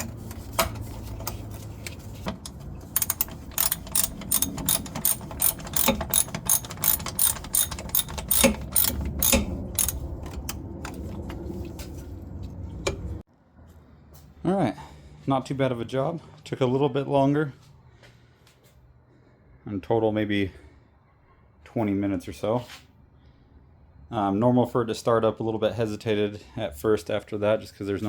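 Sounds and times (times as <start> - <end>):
ratchet wrench clicking: 2.4 - 10.5.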